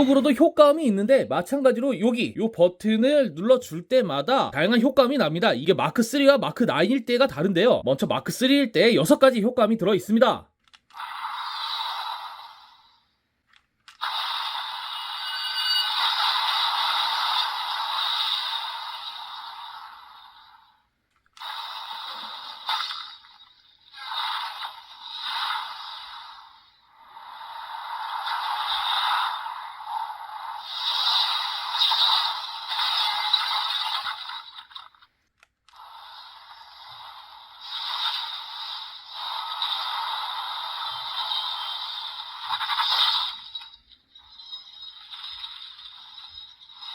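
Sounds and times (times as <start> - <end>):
toy speaker sound effects: 0.0 - 12.6.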